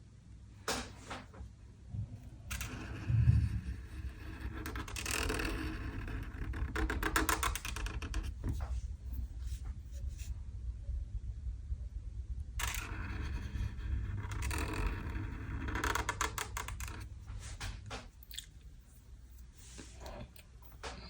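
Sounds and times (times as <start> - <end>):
steady low hum: 0.0 - 21.0
pen scratching on paper: 2.5 - 8.6, 12.6 - 16.3.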